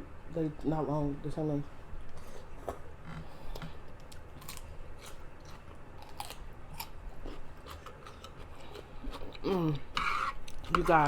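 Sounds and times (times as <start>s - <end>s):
chewing food: 2.2s - 11.0s.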